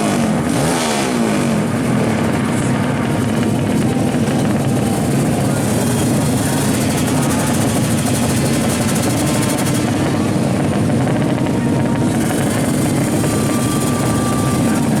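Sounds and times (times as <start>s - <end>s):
motorcycle engines at high revs: 0.0s - 15.0s.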